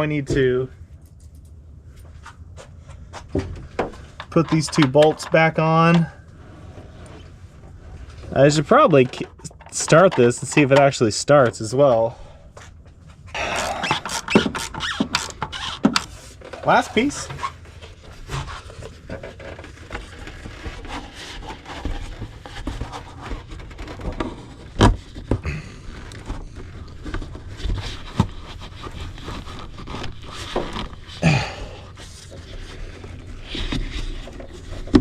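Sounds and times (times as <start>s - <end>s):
plastic and rubber scraping: 2.3s - 11.0s, 13.1s - 35.0s
plastic parts knocking: 3.3s - 6.1s.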